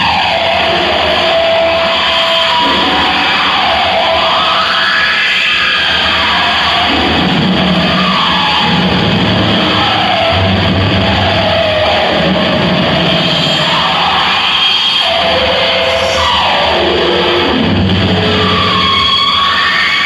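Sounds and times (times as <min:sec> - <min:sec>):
distorted guitar-like tones: 0:00.0 - 0:20.0
low bass drone: 0:06.6 - 0:19.4.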